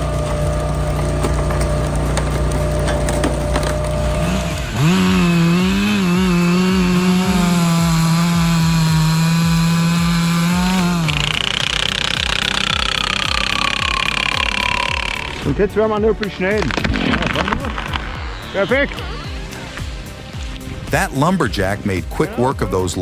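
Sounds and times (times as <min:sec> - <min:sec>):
chainsaw cutting wood: 0:00.0 - 0:15.5, 0:16.5 - 0:21.8
scattered cracks: 0:11.1 - 0:15.4, 0:16.3 - 0:20.7.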